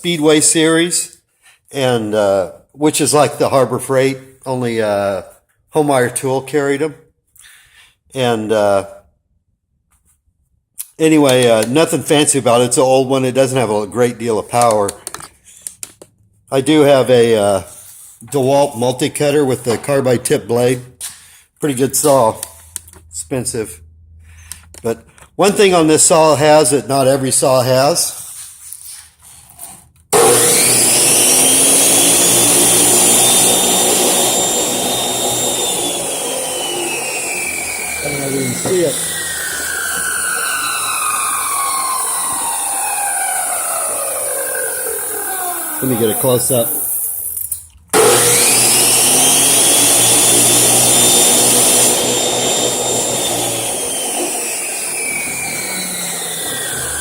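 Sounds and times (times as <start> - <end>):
chop saw motor whining: 30.1 - 57.0.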